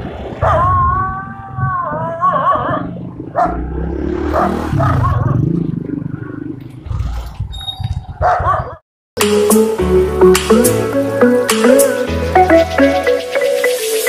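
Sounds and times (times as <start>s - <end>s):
dog barking: 0.4s - 0.7s, 2.3s - 3.6s, 8.2s - 8.8s.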